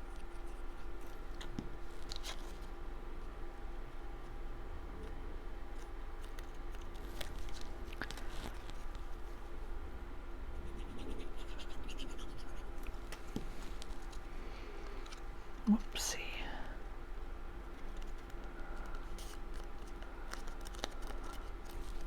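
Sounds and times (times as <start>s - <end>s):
cardstock scraping and rustling: 17.7s - 22.0s.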